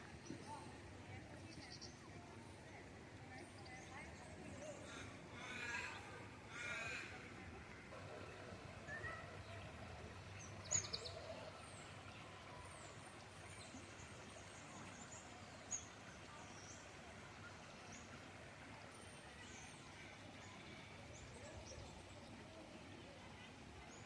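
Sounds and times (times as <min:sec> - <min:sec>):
small stream rushing: 0:00.0 - 0:24.0
small birds chirping: 0:10.4 - 0:11.8.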